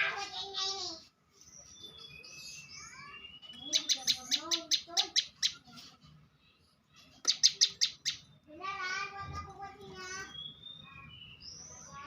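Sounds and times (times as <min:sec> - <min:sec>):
bird whistled rising notes: 0:10.2 - 0:11.8.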